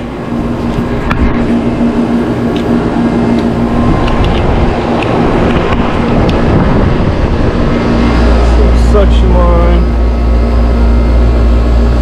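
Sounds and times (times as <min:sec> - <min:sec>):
air conditioner fan and compressor: 0:00.0 - 0:12.0.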